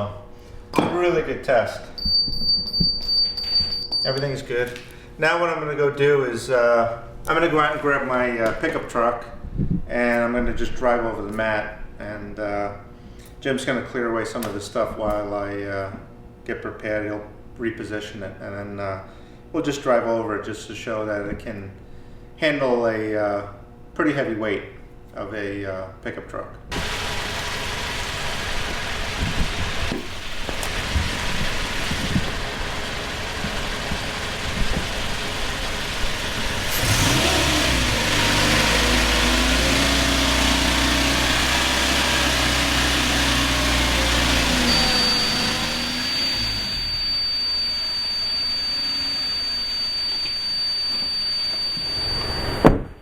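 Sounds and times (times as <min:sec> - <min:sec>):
steady high beep: 0:02.0 - 0:04.2, 0:44.3 - 0:52.8
pickup truck engine running: 0:26.7 - 0:49.5.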